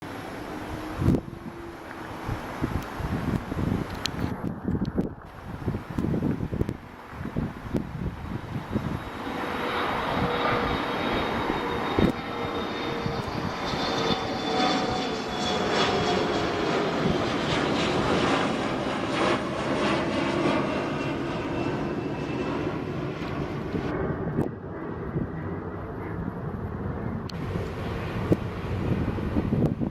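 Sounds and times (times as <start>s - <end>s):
jet engines at takeoff power: 0.0s - 29.9s
whining engine tones: 0.1s - 4.4s, 7.8s - 24.7s.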